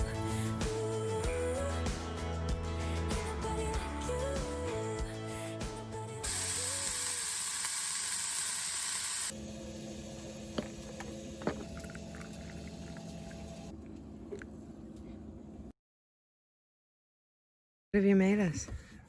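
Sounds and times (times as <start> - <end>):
food sizzling in frying pan: 6.2 - 10.4
low steady hum: 9.4 - 15.7.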